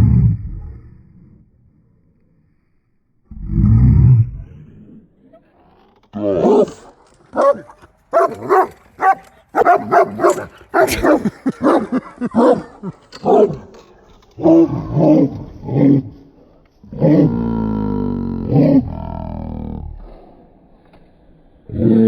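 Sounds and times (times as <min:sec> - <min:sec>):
dog barking and growling: 0:06.1 - 0:20.2.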